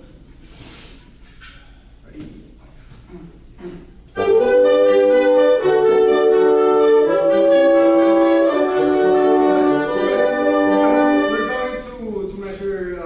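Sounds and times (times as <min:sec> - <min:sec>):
french horns playing chords: 0:04.1 - 0:12.0
woodwinds playing chords: 0:04.1 - 0:12.0.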